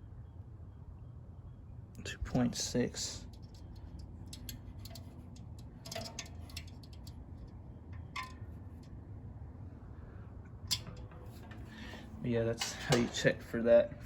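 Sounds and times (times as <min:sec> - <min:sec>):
low steady hum: 0:00.0 - 0:14.0
probe tips clicking and scraping on metal: 0:03.2 - 0:08.9, 0:10.7 - 0:13.3.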